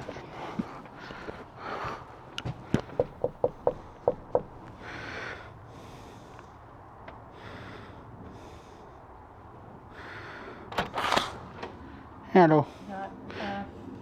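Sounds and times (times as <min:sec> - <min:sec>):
sharp tap: 0:02.8 - 0:04.7.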